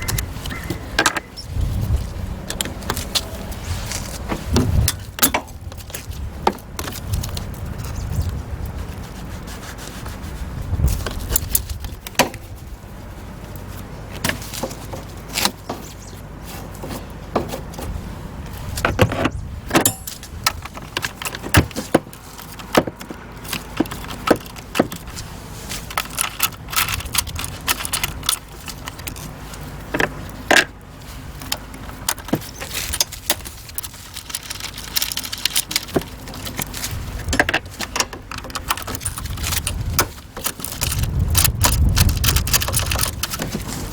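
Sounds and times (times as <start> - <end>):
metal tools clinking: 19.8 - 22.8, 31.4 - 43.7.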